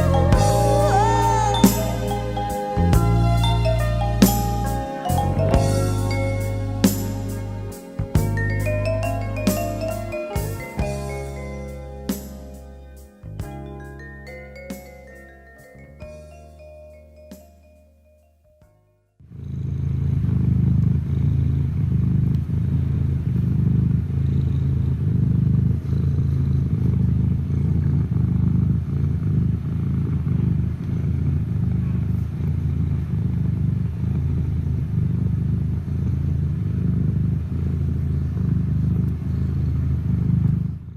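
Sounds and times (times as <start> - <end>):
cat purring: 19.3 - 40.9.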